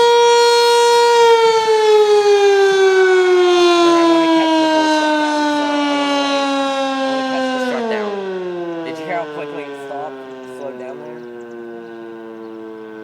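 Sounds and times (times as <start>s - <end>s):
siren winding down: 0.0s - 13.0s.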